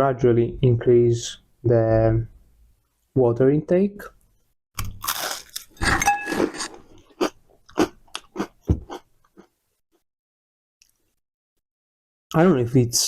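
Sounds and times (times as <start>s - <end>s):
person chewing crunchy food: 4.8s - 9.5s.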